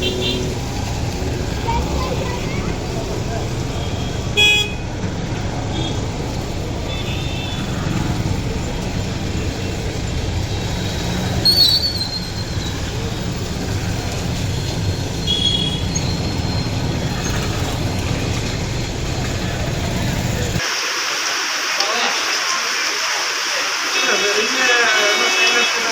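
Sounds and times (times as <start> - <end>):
vehicles rumbling on wet road: 0.0 - 20.6
rain hiss: 0.0 - 25.9
high squeal: 11.3 - 13.0, 15.2 - 17.8.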